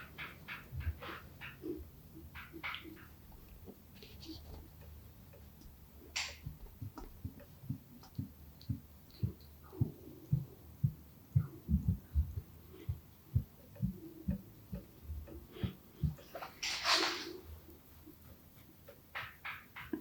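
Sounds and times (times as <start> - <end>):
dull thuds of massage strokes: 5.6 - 16.4
hand hissing on skin: 16.6 - 17.4.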